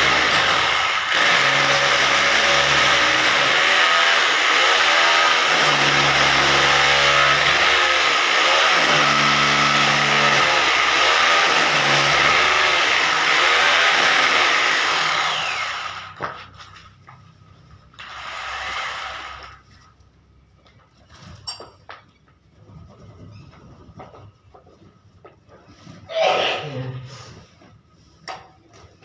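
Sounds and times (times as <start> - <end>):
hammer drill cutting: 0.0 - 16.2, 18.0 - 19.6.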